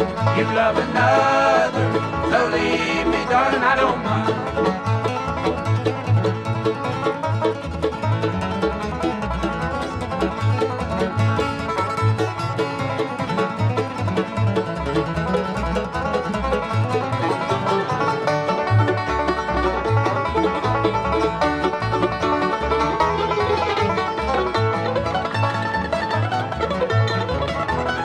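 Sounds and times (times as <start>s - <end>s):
bass keeping a steady beat: 0.0s - 17.5s
guitar: 0.0s - 28.0s
mandolin: 0.0s - 28.0s
picked banjo: 0.0s - 28.0s.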